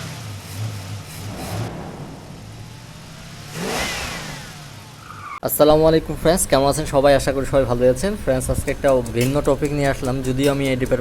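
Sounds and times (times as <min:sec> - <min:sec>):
car engine revving: 0:00.0 - 0:05.4
car rushing past: 0:00.0 - 0:05.4.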